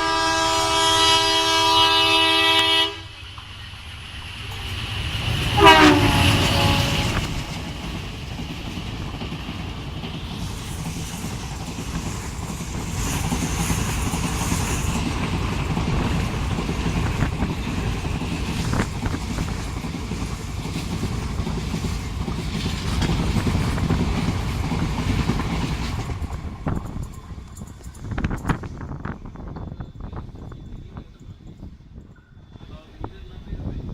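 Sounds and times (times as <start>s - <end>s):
train rumbling past: 0.0s - 33.9s
wheels clicking over rail joints: 6.6s - 29.2s.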